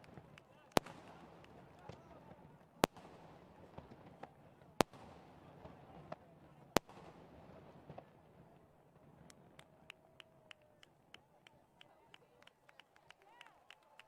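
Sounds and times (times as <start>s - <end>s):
fireworks crackling: 0.0s - 11.0s.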